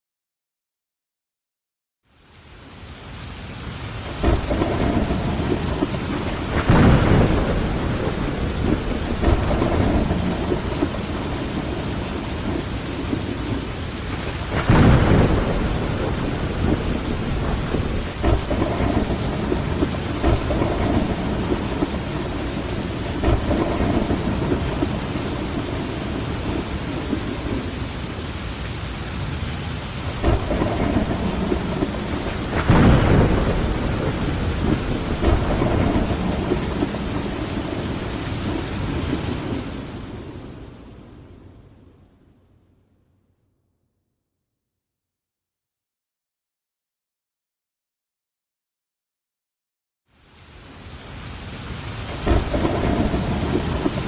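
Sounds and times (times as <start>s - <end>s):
rain on window glass: 2.1s - 41.6s, 50.1s - 54.0s
thunder rolling: 4.1s - 28.6s, 29.2s - 41.4s, 52.0s - 54.0s.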